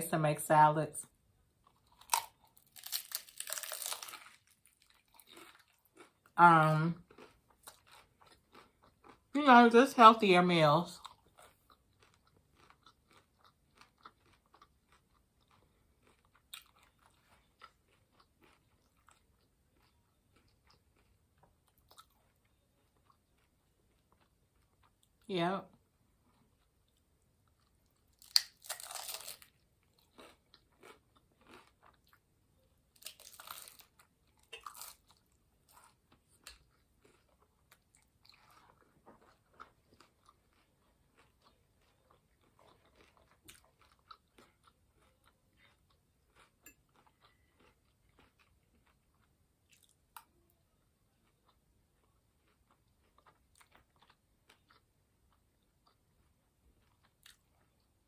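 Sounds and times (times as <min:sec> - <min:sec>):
biting into a taco: 0:01.7 - 0:06.4, 0:07.0 - 0:09.3, 0:10.9 - 0:25.1, 0:26.4 - 0:32.2, 0:32.9 - 0:50.4
chewing with small clicks: 0:07.0 - 0:09.3, 0:11.0 - 0:58.0.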